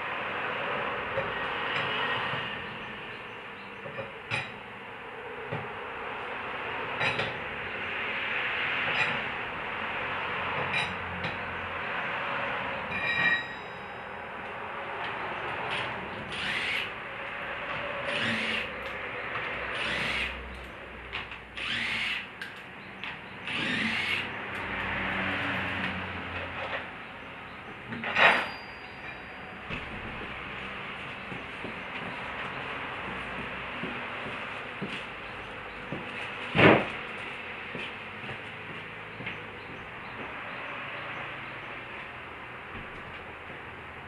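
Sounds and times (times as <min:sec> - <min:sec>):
impact wrench bursts: 0:16.3 - 0:16.9, 0:18.1 - 0:18.7, 0:19.7 - 0:20.4, 0:21.6 - 0:22.3, 0:23.4 - 0:24.3.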